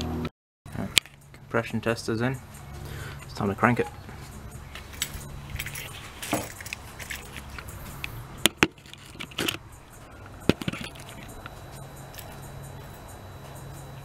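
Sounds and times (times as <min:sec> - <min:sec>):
steady low hum: 0:00.0 - 0:14.0
keys jingling: 0:02.6 - 0:13.9
sharp clicks and knocks: 0:10.4 - 0:11.6.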